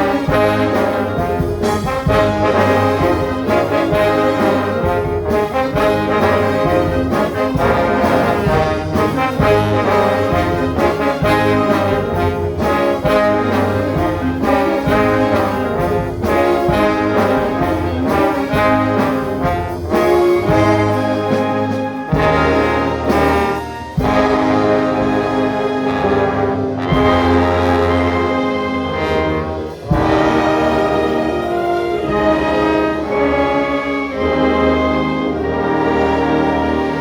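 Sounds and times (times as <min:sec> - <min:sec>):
brass chords: 0:00.0 - 0:37.0.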